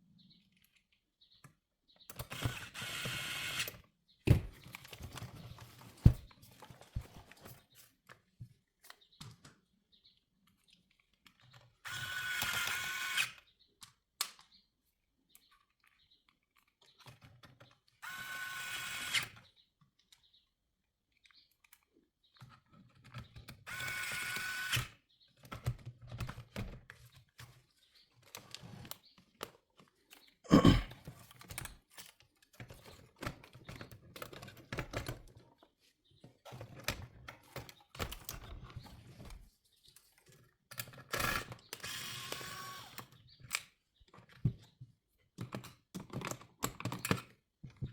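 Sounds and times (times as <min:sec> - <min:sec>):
electric screwdriver whining: 0:02.3 - 0:03.7, 0:11.9 - 0:13.4, 0:18.0 - 0:19.3, 0:23.7 - 0:24.8, 0:41.2 - 0:43.0.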